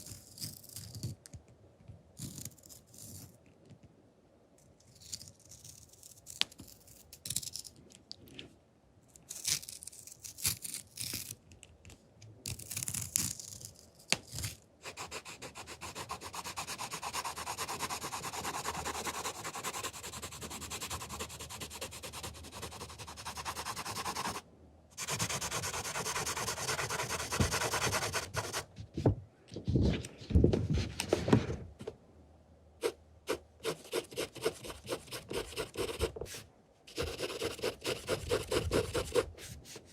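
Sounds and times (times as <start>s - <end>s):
rubbing and scratching noises: 14.8s - 24.4s, 25.0s - 31.6s, 32.8s - 39.9s.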